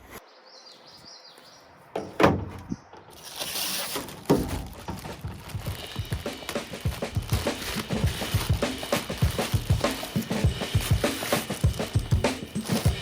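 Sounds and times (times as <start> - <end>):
scraping and clatter: 3.0 - 13.0.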